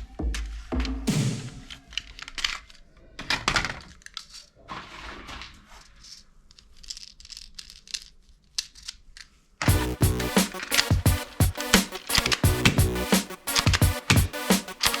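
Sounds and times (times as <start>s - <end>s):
music: 0.0s - 1.8s, 9.7s - 15.0s
objects clicking and crinkling: 1.7s - 9.4s.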